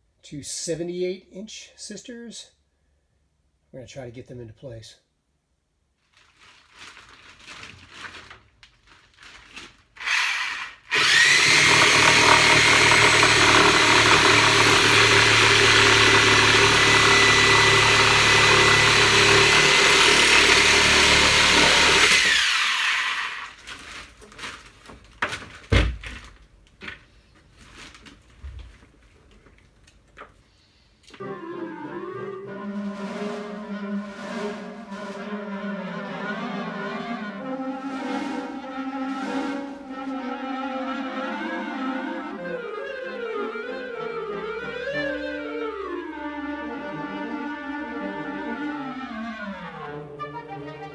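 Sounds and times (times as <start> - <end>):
power tool motor running: 10.0 - 23.5.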